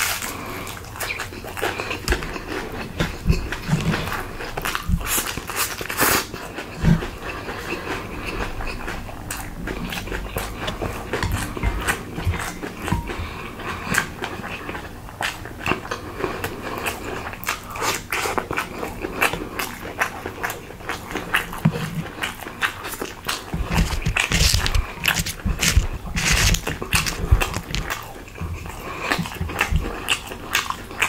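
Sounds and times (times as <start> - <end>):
food chewing and crunching: 0.0 - 31.0.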